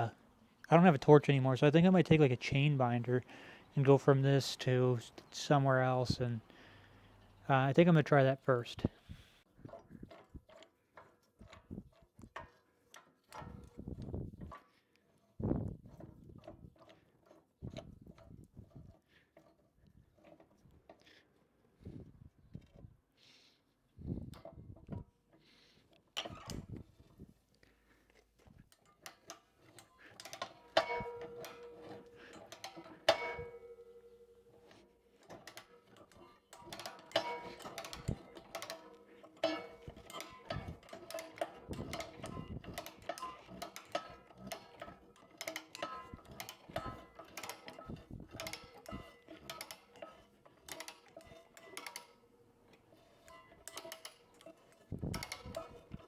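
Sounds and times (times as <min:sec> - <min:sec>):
metallic chain clicks and clinks: 0:30.1 - 0:52.2.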